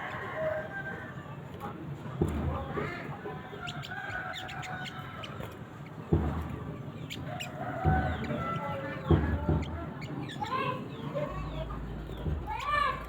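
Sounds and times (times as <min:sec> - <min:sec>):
bird chirping calls: 0:02.3 - 0:13.0
dull thumps: 0:06.1 - 0:10.0.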